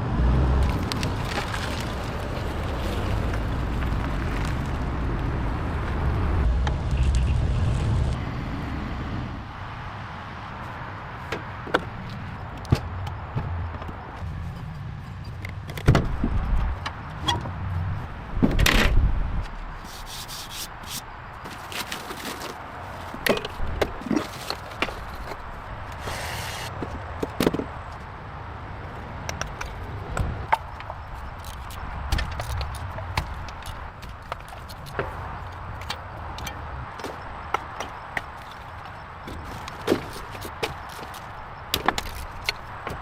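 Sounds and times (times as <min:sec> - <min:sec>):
scraping or hissing: 0:26.0 - 0:26.7.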